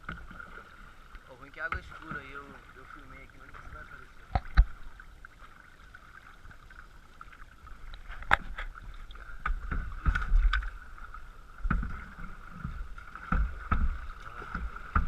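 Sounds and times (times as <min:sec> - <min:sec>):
paddle splashes: 0:00.0 - 0:15.0
paddle knocks on hull: 0:11.6 - 0:15.0.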